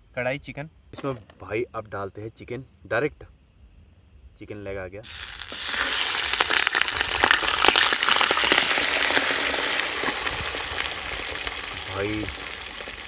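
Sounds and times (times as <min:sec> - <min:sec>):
chicken frying with loud sizzle: 0:05.0 - 0:13.0.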